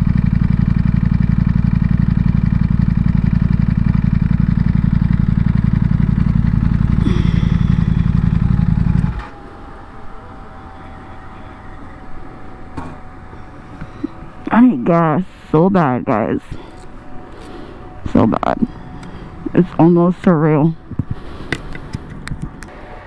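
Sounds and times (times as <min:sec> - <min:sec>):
motorcycle engine idling: 0:00.0 - 0:22.7.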